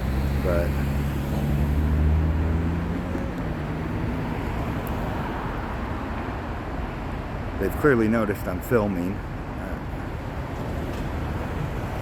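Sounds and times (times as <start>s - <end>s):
vehicle engine humming: 0.0s - 7.9s
road traffic: 0.0s - 12.0s.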